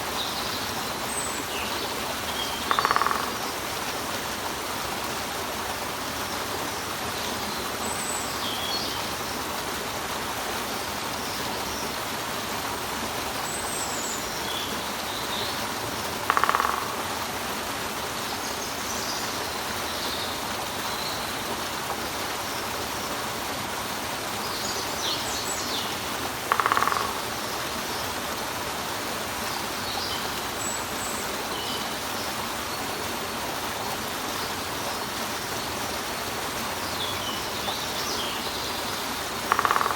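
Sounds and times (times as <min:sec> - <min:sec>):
woodpecker drumming burst: 0:02.6 - 0:03.5, 0:16.2 - 0:17.2, 0:26.4 - 0:27.4, 0:39.5 - 0:39.9.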